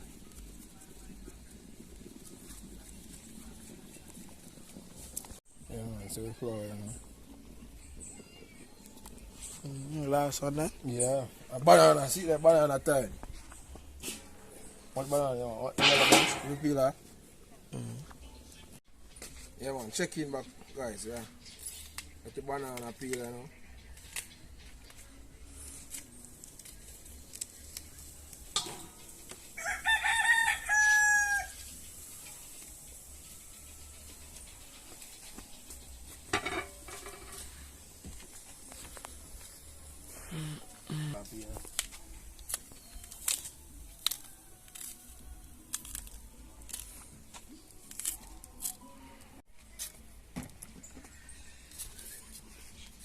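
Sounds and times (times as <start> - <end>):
bananas being peeled by hand: 21.2 - 30.3, 33.6 - 49.0
rooster crowing: 29.6 - 31.7.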